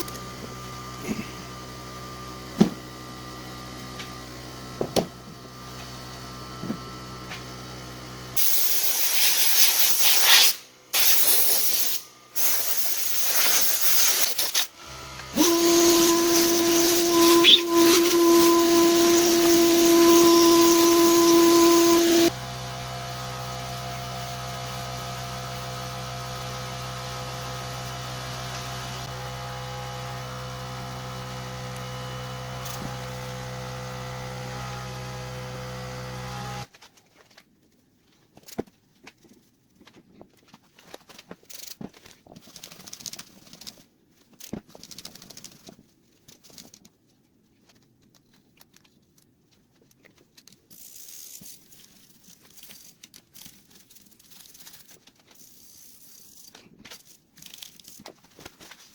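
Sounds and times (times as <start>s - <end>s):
electric motor buzzing hum: 0.0s - 9.7s, 11.0s - 36.7s.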